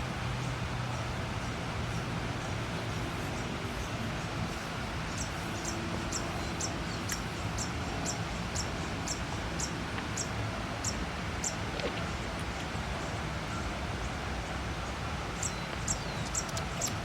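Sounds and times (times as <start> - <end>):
steady background hiss: 0.0 - 17.0.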